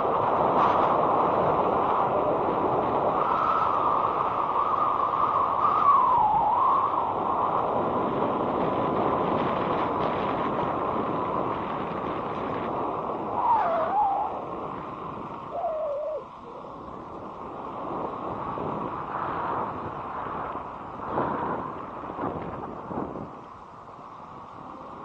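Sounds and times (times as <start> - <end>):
wind rushing over microphone: 0.0 - 25.0
faint wavering whine: 12.2 - 18.1.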